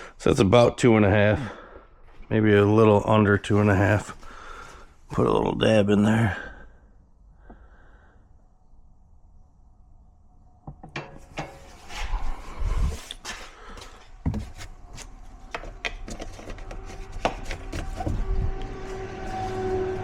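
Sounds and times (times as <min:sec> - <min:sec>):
tools being handled: 0:13.0 - 0:18.3.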